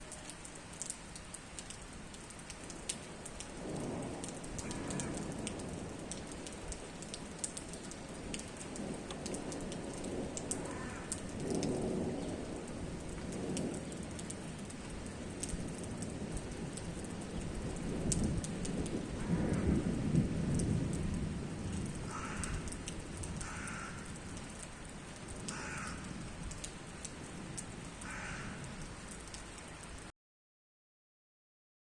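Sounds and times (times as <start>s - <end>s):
steady rain falling: 0.0s - 30.1s
drops ticking on a surface: 4.2s - 11.8s, 12.6s - 17.4s, 21.9s - 30.0s.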